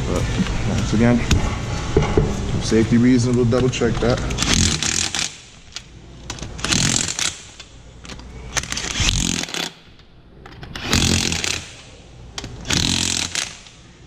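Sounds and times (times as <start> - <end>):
power tool tightening lug nuts: 4.3 - 5.4, 6.3 - 7.6, 8.6 - 9.8, 10.7 - 11.8, 12.4 - 13.7.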